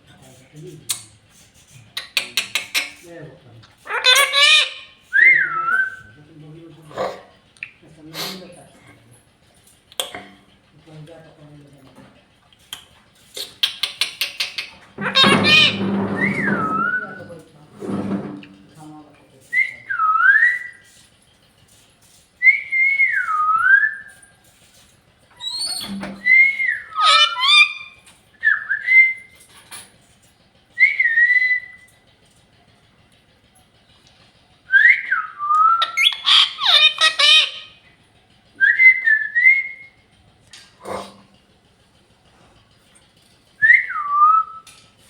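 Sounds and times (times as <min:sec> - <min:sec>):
parrot squawky chatter: 0:00.9 - 0:06.1, 0:12.3 - 0:17.4, 0:20.0 - 0:30.1, 0:34.7 - 0:38.6
parrot whistling: 0:03.9 - 0:06.2, 0:13.7 - 0:17.3, 0:19.5 - 0:20.8, 0:22.4 - 0:24.2, 0:25.4 - 0:29.4, 0:30.8 - 0:31.9, 0:34.7 - 0:37.8, 0:38.6 - 0:40.0, 0:43.6 - 0:44.7.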